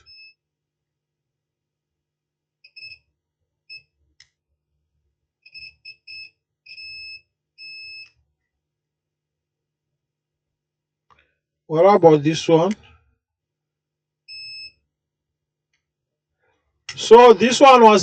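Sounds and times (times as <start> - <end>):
multimeter continuity beeps: 0.0 - 0.4, 2.6 - 3.1, 5.4 - 8.2, 14.2 - 14.9.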